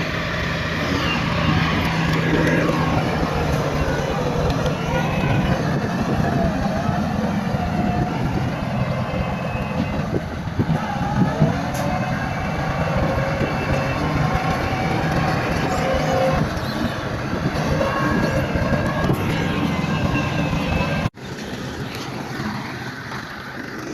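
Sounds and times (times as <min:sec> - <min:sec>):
bulldozer diesel engine under load: 0:00.0 - 0:23.9
metallic squeal from running gear: 0:13.3 - 0:21.1.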